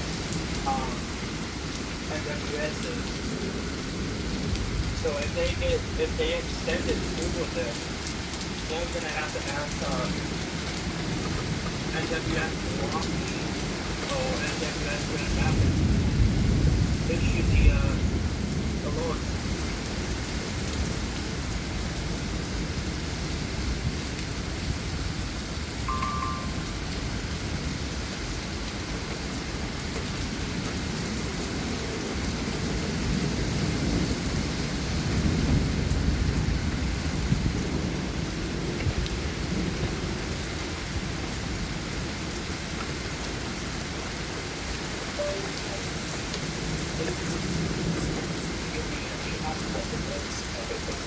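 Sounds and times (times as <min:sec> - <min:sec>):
heavy rain: 0:00.0 - 0:51.0
wind: 0:00.0 - 0:51.0
low thunder rumble: 0:15.0 - 0:25.4, 0:32.7 - 0:40.4.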